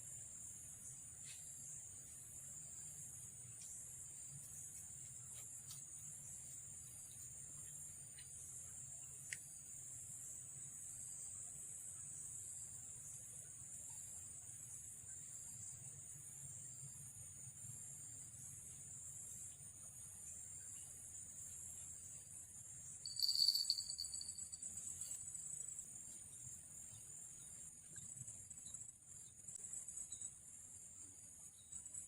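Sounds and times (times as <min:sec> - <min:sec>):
crickets chirping: 0:00.0 - 0:32.0
fishing-rod bell jingling: 0:23.0 - 0:24.8.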